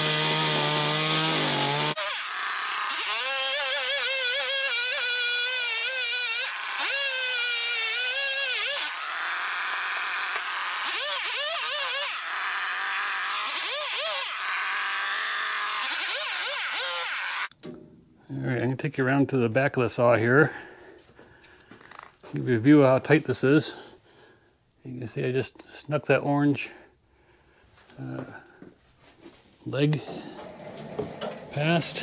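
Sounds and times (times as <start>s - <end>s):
chainsaw cutting wood: 0.0s - 17.5s, 30.1s - 32.0s.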